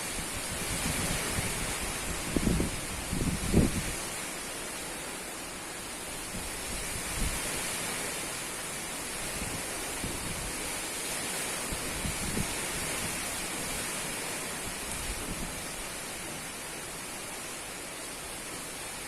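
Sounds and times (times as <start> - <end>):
strong wind rushing: 0.0 - 4.0, 11.7 - 13.2
wind gusts buffeting microphone: 0.0 - 4.1, 6.2 - 7.7, 9.2 - 10.6, 11.6 - 16.4.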